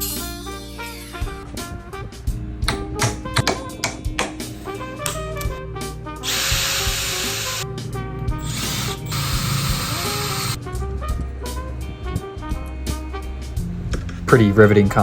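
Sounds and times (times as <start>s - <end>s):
background music: 0.0s - 15.0s
power drill drilling metal: 6.2s - 7.6s, 8.5s - 10.6s.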